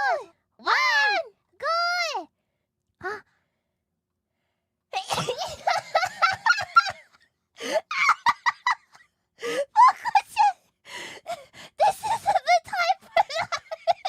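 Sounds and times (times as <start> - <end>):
woman laughing with gasps: 5.1 - 14.0.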